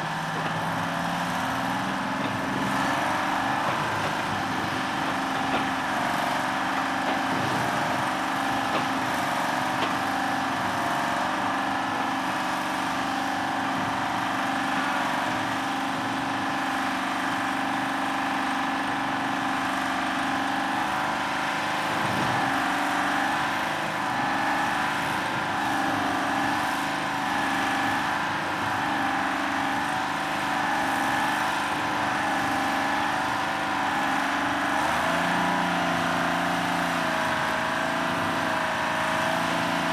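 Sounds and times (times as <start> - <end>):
drilling rig engine drone: 0.0 - 17.3.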